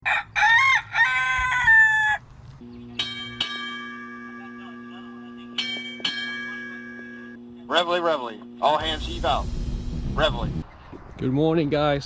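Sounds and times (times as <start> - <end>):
rooster crowing: 0.0 - 2.3
bell-like chime strikes: 3.0 - 7.4.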